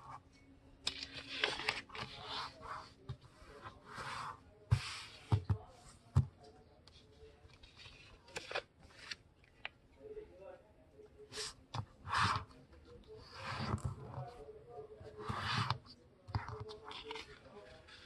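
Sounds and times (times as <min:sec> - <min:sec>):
paper rustling and creasing: 0:00.9 - 0:05.2, 0:07.5 - 0:09.7, 0:15.2 - 0:18.0.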